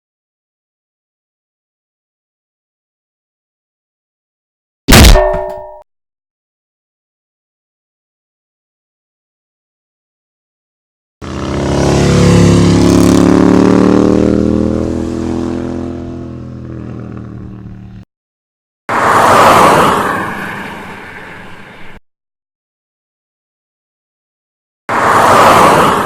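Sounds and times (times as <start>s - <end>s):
noisier vehicle passing by: 11.2s - 18.0s, 18.9s - 22.0s, 24.9s - 26.0s
vehicle passing by: 11.2s - 18.0s, 18.9s - 22.0s, 24.9s - 26.0s.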